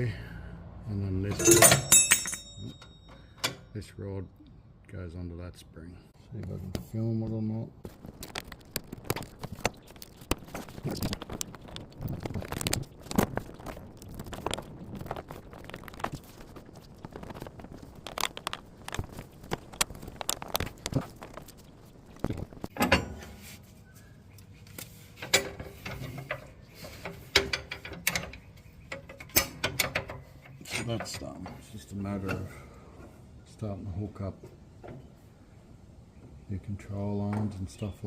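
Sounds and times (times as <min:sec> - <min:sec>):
metal parts clicking and scraping: 0:01.3 - 0:03.6
sharp metal knocks: 0:01.3 - 0:03.7.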